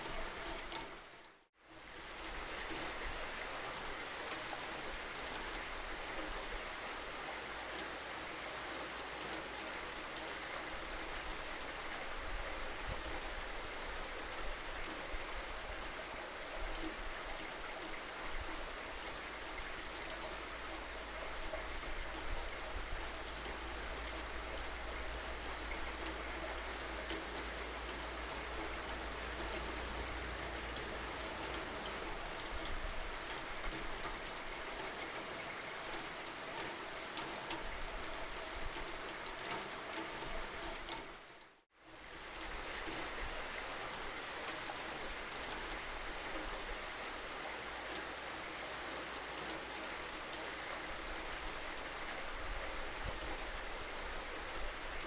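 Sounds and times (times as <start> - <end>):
steady rain hiss: 0.0 - 55.0
raindrops pattering: 17.1 - 41.6.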